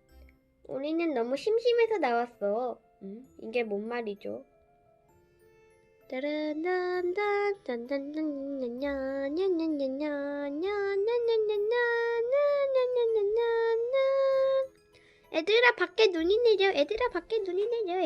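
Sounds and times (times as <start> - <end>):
child singing: 6.1 - 14.7, 15.4 - 18.0.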